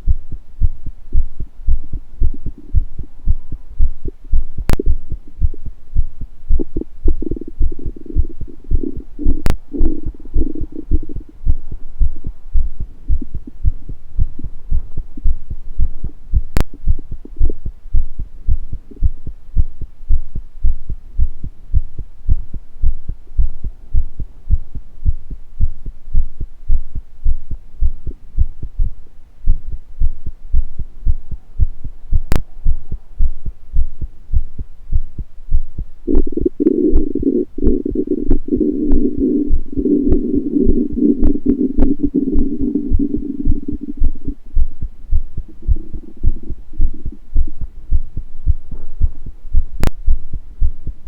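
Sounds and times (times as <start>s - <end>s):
heartbeat low thumps: 0.0s - 51.0s
stomach gurgle: 6.5s - 11.5s, 36.1s - 44.4s, 45.4s - 47.7s.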